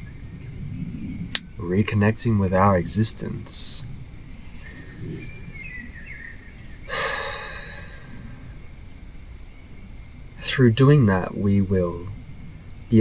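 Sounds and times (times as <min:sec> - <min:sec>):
songbirds chirping: 0:00.0 - 0:13.0
person sighing: 0:06.9 - 0:08.5.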